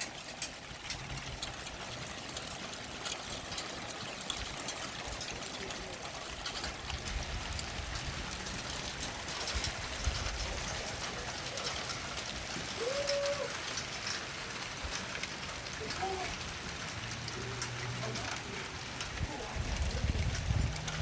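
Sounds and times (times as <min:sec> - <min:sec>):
wet precipitation pattering: 0:00.0 - 0:21.0.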